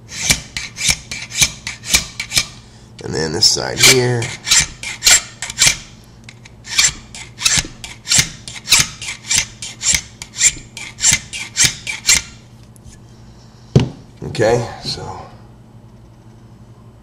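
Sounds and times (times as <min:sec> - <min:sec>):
hand file rasping on metal: 0:00.1 - 0:02.5, 0:03.8 - 0:05.8, 0:06.7 - 0:12.3.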